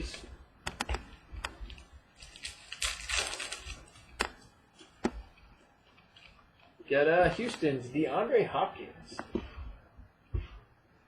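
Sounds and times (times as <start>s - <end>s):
crinkling rustle: 1.1s - 5.0s
trading cards clicking and snapping: 2.2s - 4.4s.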